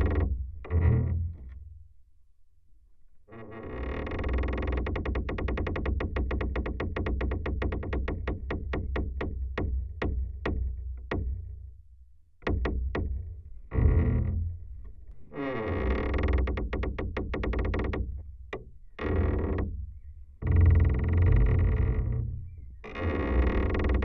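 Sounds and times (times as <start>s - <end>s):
door hinge creaking: 12.4s - 19.8s, 20.4s - 24.0s.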